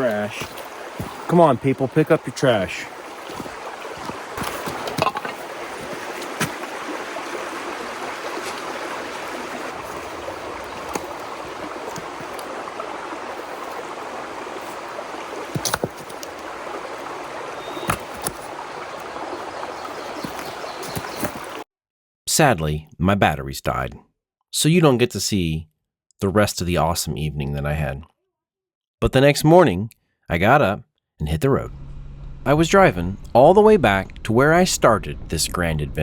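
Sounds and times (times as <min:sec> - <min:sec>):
stream running: 0:00.0 - 0:21.6.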